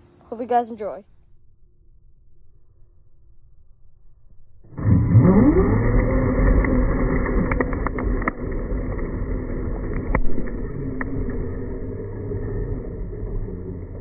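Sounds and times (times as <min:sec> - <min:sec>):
rc car motor whine: 0:04.7 - 0:14.0
sharp clicks and ticks: 0:05.4 - 0:12.4.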